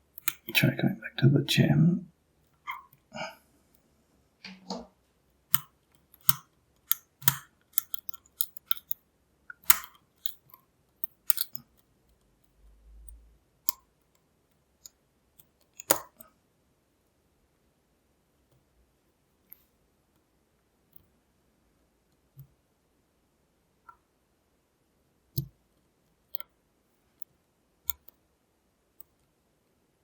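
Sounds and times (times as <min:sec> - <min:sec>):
lock pick clicking in padlock: 0:00.1 - 0:00.6, 0:05.5 - 0:09.0, 0:09.6 - 0:11.8, 0:15.4 - 0:16.2.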